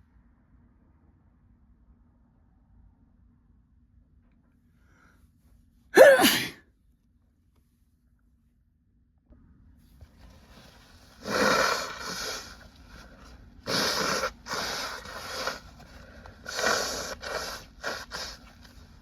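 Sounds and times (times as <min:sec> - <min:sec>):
person blowing nose: 0:06.0 - 0:06.6, 0:11.2 - 0:12.7, 0:13.7 - 0:18.6.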